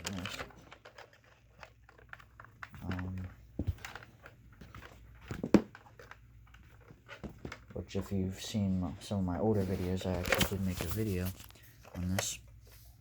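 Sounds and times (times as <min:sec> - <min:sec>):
plastic housings clicking and knocking: 0:00.0 - 0:07.9.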